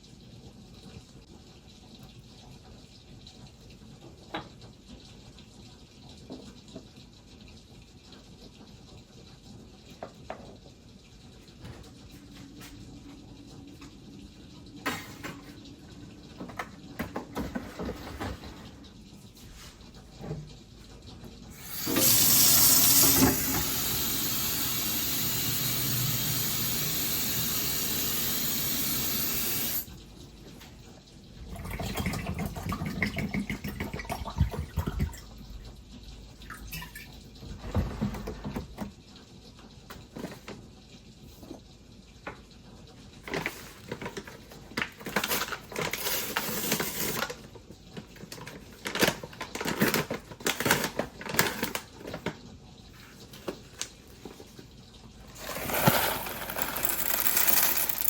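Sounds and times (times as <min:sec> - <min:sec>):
water running from a tap: 0:18.5 - 0:58.0
clatter of things being handled: 0:55.3 - 0:58.0.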